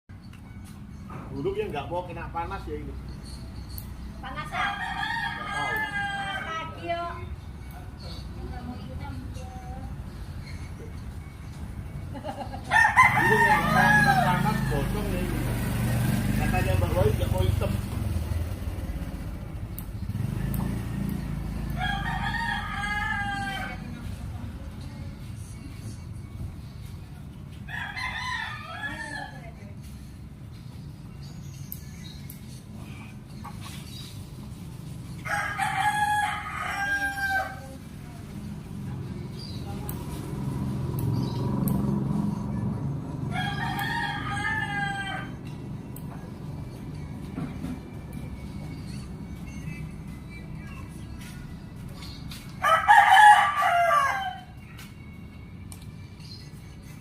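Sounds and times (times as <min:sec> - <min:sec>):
rooster crowing: 0:04.4 - 0:06.7, 0:12.7 - 0:15.1, 0:21.6 - 0:23.9, 0:27.7 - 0:29.5, 0:35.2 - 0:37.8, 0:43.3 - 0:45.4, 0:52.6 - 0:54.6.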